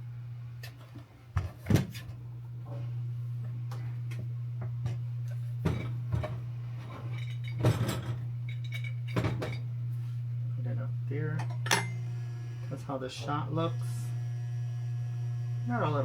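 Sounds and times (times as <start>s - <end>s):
espresso machine humming: 2.2s - 16.0s
cup and portafilter clinking: 11.4s - 12.0s.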